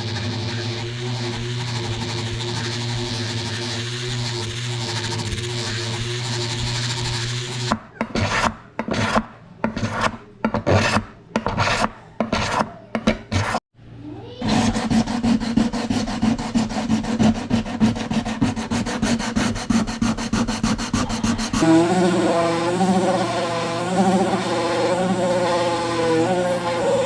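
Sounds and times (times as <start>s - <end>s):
hand filing a workpiece: 8.2s - 12.7s, 14.4s - 27.0s
steady hum: 21.6s - 27.0s.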